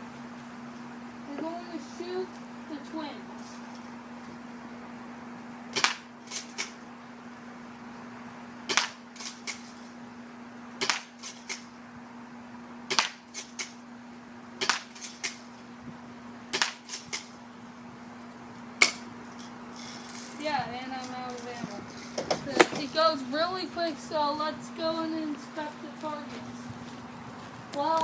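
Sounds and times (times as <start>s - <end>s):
toy shotgun shots: 5.8s - 6.8s, 8.7s - 9.7s, 10.8s - 11.6s, 12.9s - 13.8s, 14.6s - 15.4s, 16.6s - 17.3s.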